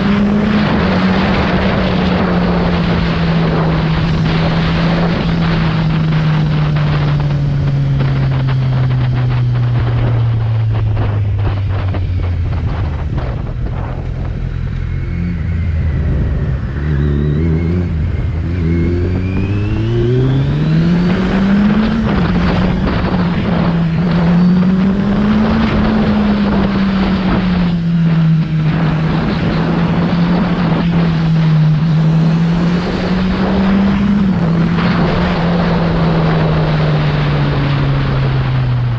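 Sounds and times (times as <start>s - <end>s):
motorcycle engine: 0.0s - 38.9s
wind rushing: 0.0s - 38.9s.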